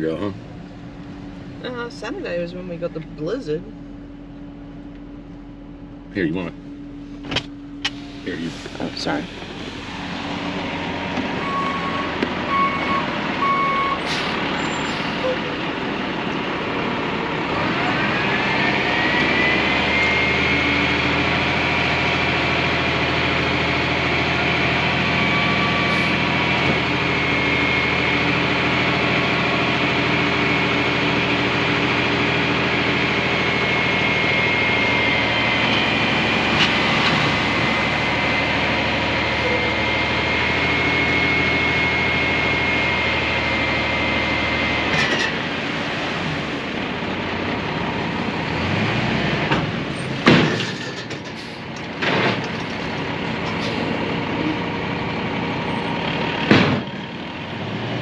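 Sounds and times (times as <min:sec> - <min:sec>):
high whine: 0:00.0 - 0:16.4
diesel engine hum: 0:00.0 - 0:58.0.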